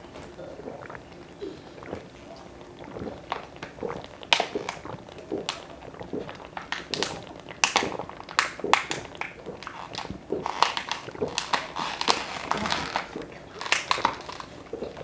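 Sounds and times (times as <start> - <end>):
people gulping water: 0.0 - 15.0
sharp clicks and crackles: 6.6 - 14.6.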